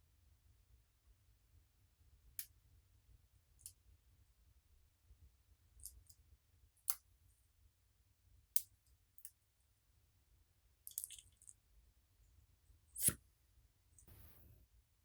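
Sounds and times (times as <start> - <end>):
clicks of small hard objects: 10.9 - 11.6.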